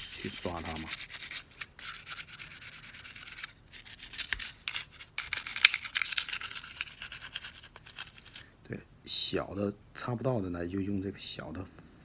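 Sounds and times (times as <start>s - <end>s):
brush scrubbing metal: 0.0s - 8.4s.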